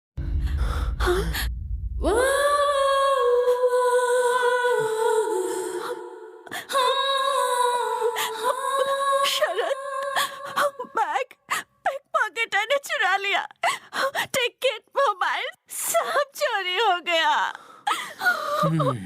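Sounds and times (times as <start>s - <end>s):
low rumble: 0.2s - 2.8s
person singing long notes: 18.6s - 19.0s.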